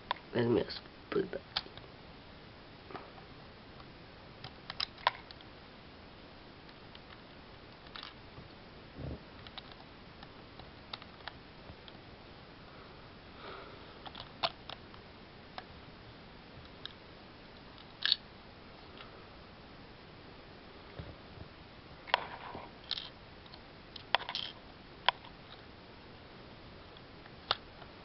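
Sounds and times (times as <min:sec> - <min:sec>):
plastic bricks clicking and knocking: 0:24.0 - 0:25.3.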